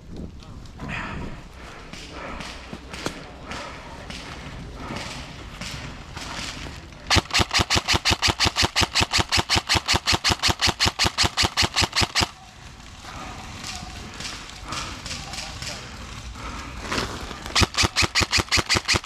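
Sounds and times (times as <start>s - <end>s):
airsoft gun rapid firing: 7.1s - 12.4s, 17.5s - 19.0s.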